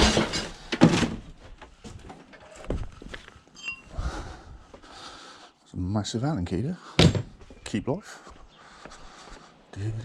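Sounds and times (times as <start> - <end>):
metal tools clattering in a box: 0.0 - 0.7.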